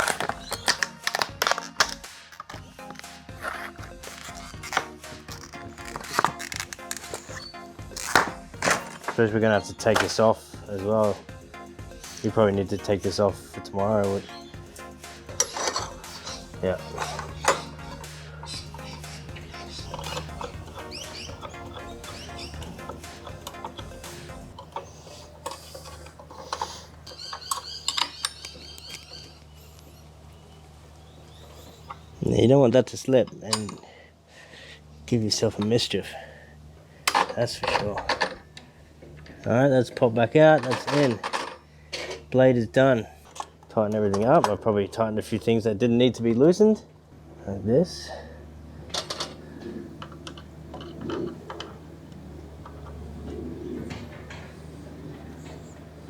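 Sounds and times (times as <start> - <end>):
metal tools clinking: 0.0 - 10.3, 15.3 - 28.5, 33.3 - 33.8, 40.5 - 42.3, 48.9 - 49.4
steady low hum: 0.0 - 56.0
metallic clicks of hand tools: 15.4 - 29.1.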